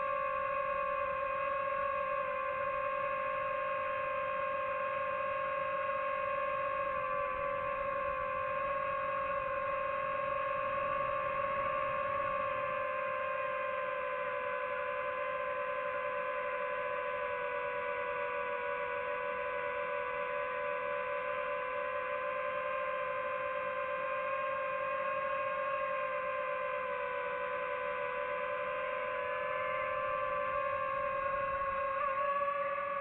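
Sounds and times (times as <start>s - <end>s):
drone propellers whining: 26.6s - 33.0s.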